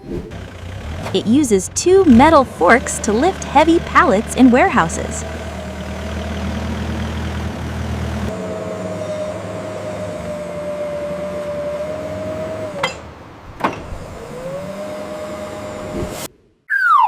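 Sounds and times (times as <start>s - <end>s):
low engine rumble: 0.0s - 11.0s
forklift whine: 0.0s - 16.3s.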